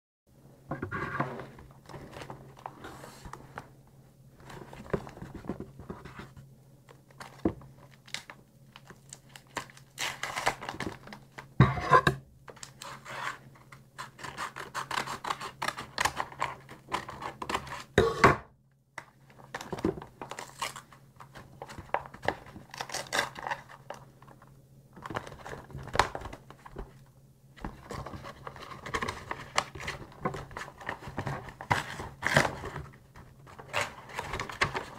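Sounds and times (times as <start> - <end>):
packaging tearing and crinkling: 7.2 - 11.5, 14.0 - 17.9, 19.5 - 24.0, 27.9 - 34.9.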